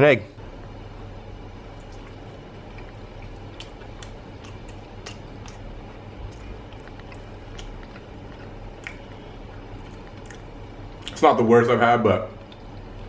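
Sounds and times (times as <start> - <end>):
low background hum: 0.0 - 13.0
person chewing: 1.6 - 11.2, 12.4 - 13.0.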